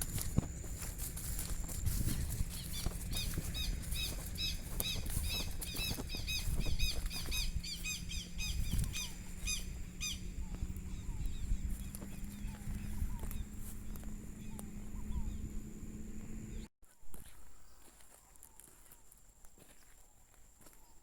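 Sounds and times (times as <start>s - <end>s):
constant low rumble: 0.0s - 16.7s
bird chirping rapidly: 1.4s - 16.7s.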